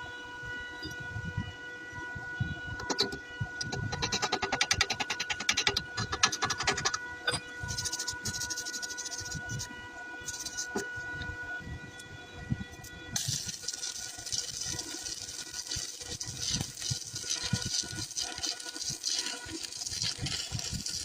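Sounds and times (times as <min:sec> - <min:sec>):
thin steady whine: 0:00.0 - 0:21.0
welding crackling and spattering: 0:02.8 - 0:11.0, 0:12.8 - 0:21.0.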